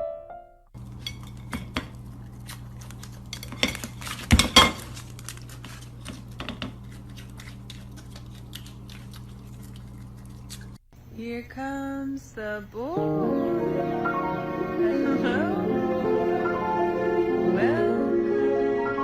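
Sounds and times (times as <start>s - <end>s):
steady low hum: 0.8s - 13.0s.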